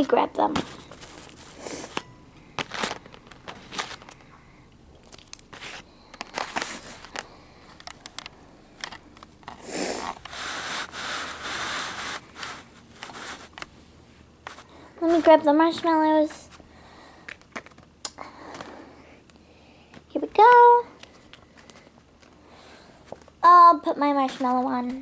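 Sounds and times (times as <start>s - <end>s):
rustling: 0.5s - 4.3s, 5.1s - 13.7s.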